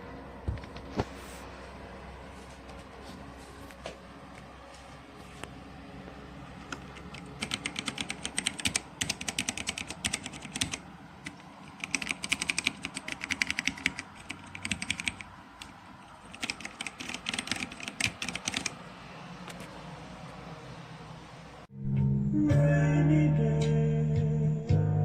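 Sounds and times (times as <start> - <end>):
clicky keyboard typing: 6.7 - 18.8.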